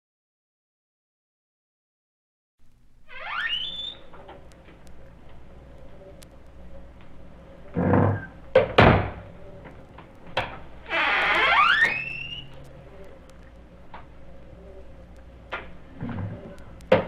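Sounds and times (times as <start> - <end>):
faint steady hum: 2.6 - 17.0
rising squeal: 3.1 - 4.1, 10.9 - 12.6
click: 3.8 - 7.2.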